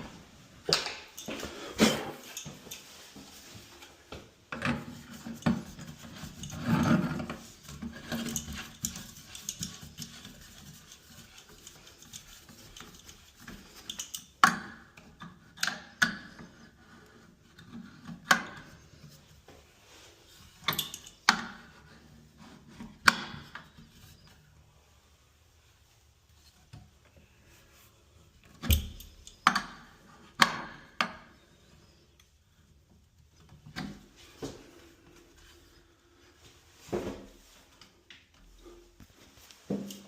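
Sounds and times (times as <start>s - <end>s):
rubbing and scraping of fittings: 1.2s - 24.4s.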